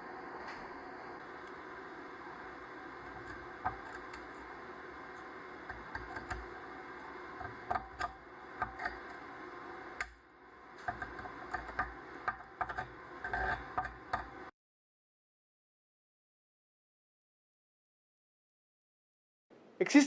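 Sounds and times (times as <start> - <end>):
welding arc crackling and popping: 0.0 - 14.5.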